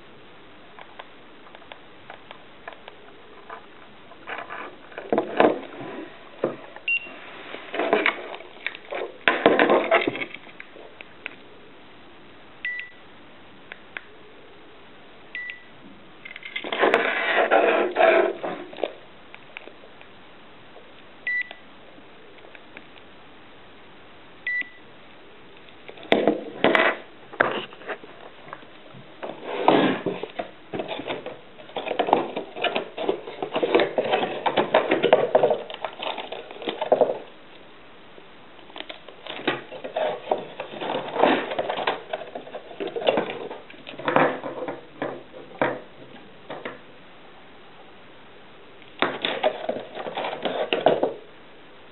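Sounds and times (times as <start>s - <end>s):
plastic parts and packaging handled: 1.5s - 11.4s, 25.6s - 37.6s, 38.6s - 46.9s, 48.9s - 51.2s
short electronic beeps: 24.5s - 24.8s.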